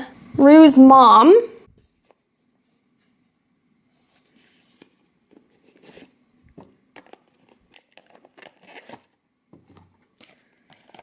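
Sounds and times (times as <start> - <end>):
packaging crinkling: 6.9 - 9.2, 10.1 - 11.0.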